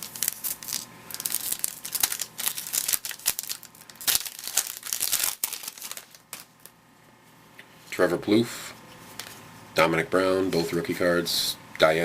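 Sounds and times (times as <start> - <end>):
foil wrapper crinkling and tearing: 0.0 - 6.7.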